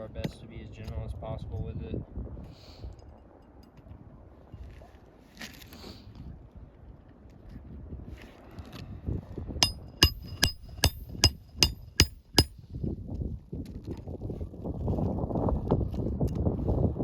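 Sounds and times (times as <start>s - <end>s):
hammer striking nail: 9.6s - 12.5s.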